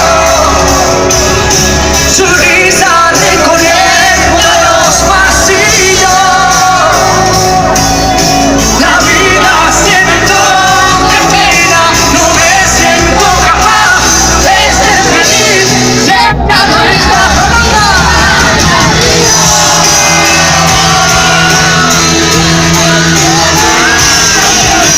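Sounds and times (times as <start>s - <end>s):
live pop band with vocals: 0.0s - 24.9s
people shouting: 3.2s - 24.9s.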